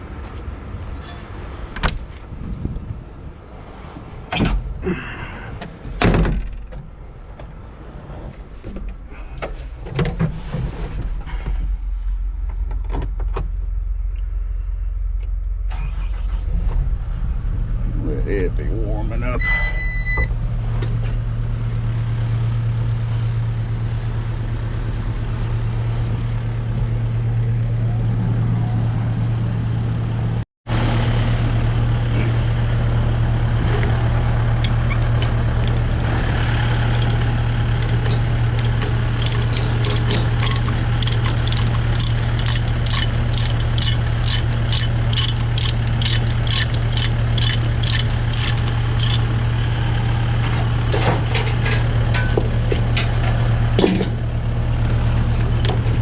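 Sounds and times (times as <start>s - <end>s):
engine idling: 20.0s - 56.0s
regular mechanical clicking: 34.5s - 36.1s, 36.9s - 49.4s.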